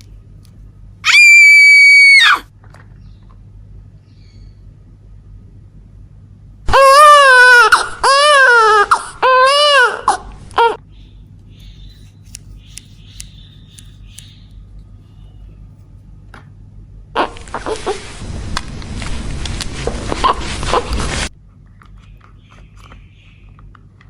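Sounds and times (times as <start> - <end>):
baby crying: 6.7 - 10.8.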